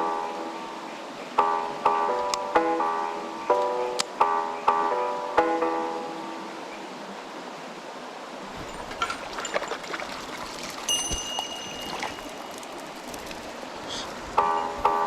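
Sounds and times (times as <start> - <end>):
mountain stream running: 0.0 - 15.0
high steady tone: 10.9 - 12.7.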